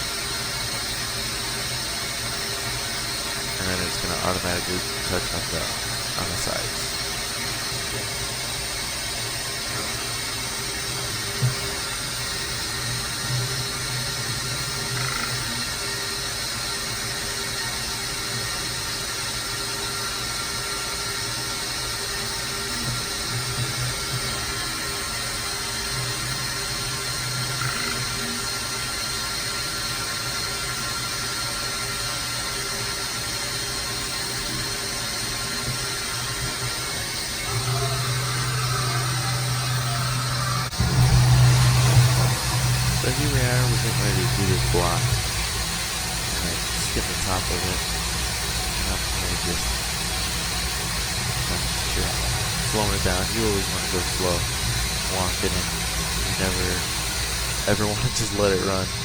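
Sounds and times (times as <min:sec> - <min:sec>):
mill hiss and hum: 0:00.0 - 0:20.2, 0:35.6 - 0:59.0.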